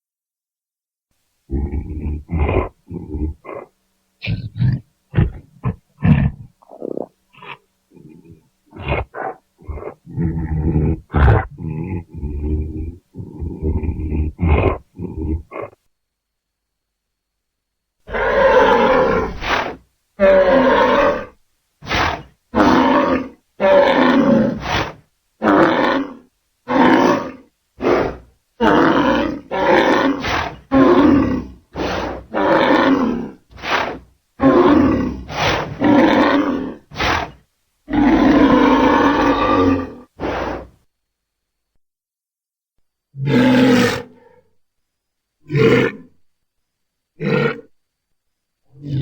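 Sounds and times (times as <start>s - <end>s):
creature roars and grunts: 1.5s - 15.8s, 18.1s - 40.8s, 43.2s - 44.4s.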